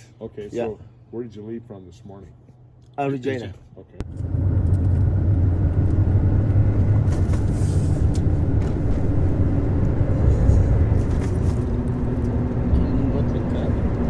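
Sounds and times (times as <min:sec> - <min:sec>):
car engine rumble from inside: 0:04.0 - 0:14.0.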